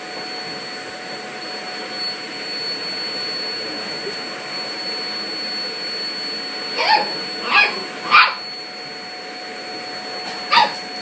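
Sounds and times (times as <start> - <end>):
vacuum cleaner whining: 0.0 - 11.0
small dog yapping: 6.8 - 8.5, 10.3 - 11.0.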